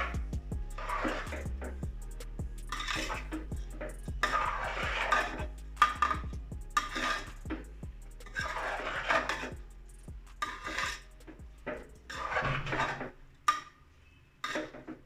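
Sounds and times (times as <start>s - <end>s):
spoon scraping a pot: 0.8s - 1.5s, 2.7s - 6.2s, 6.8s - 7.6s, 8.2s - 9.6s, 10.4s - 13.8s, 14.4s - 15.0s.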